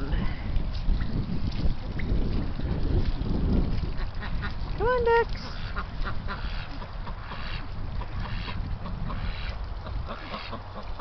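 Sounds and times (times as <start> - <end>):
wind rumble on microphone: 0.0 - 11.0
ducks quacking: 5.4 - 11.0.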